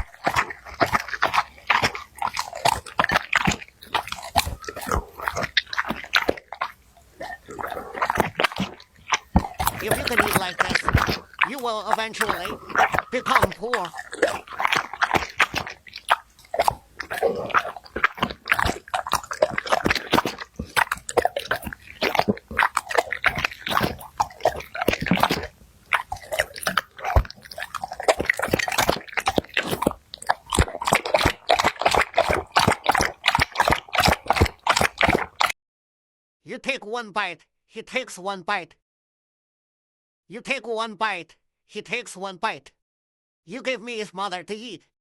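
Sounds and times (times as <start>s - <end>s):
dog chewing and crunching food: 0.0s - 35.6s.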